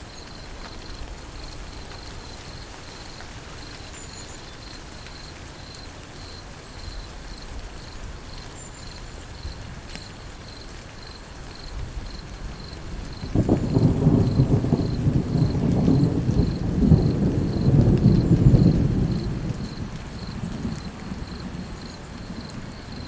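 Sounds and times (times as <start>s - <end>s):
steady rain falling: 0.0s - 23.0s
insect chirping: 0.1s - 9.6s, 10.5s - 23.0s.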